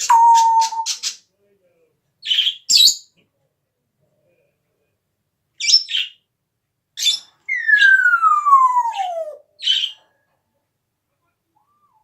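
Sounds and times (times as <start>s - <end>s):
parrot harsh calls: 7.0s - 10.0s.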